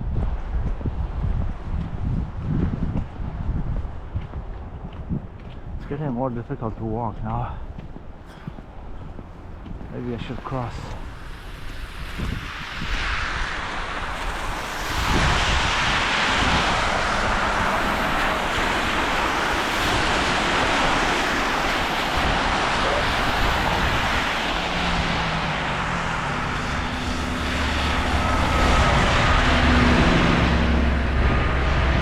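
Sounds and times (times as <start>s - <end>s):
tyre and road noise: 0.0s - 32.0s
heavy vehicle engine humming: 16.8s - 32.0s.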